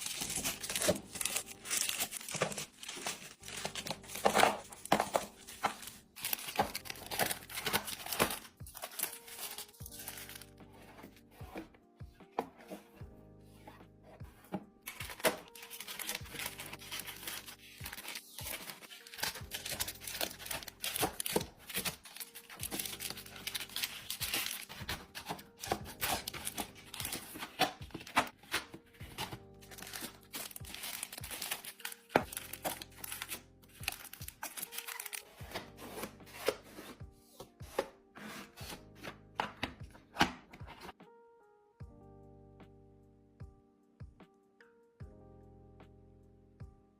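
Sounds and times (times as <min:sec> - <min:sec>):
wrappers crinkling and tearing: 0:00.0 - 0:10.5, 0:14.9 - 0:35.5
soft background music: 0:00.0 - 0:46.9.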